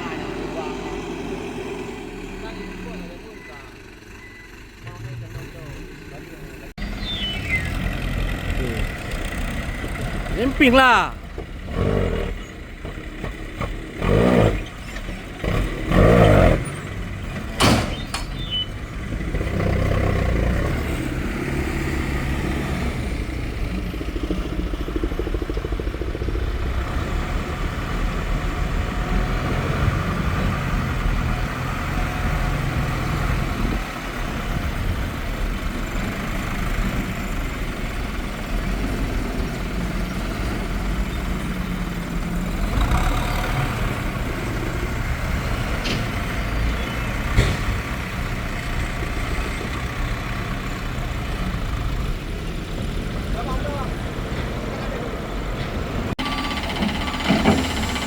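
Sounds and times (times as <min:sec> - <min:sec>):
diesel engine rumbling: 0:00.0 - 0:58.0.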